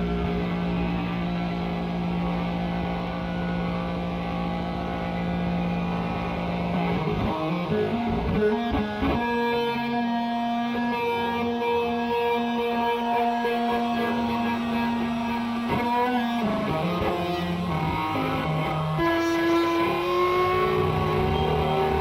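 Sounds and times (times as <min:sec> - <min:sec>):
instrumental pop music with guitar: 0:06.6 - 0:22.0.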